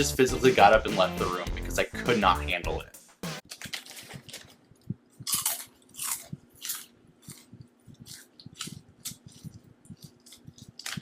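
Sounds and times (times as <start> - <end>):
person chewing crunchy food: 3.6 - 11.0.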